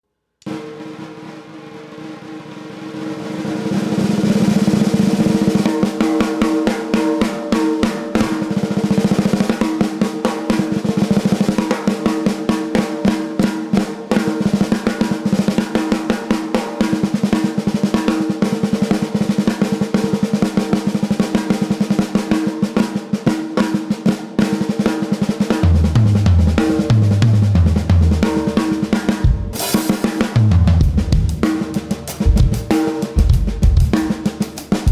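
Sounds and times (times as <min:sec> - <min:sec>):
snare drum roll: 0:00.4 - 0:34.9
bass drum kicks: 0:25.6 - 0:28.5, 0:29.2 - 0:29.8, 0:30.4 - 0:34.1.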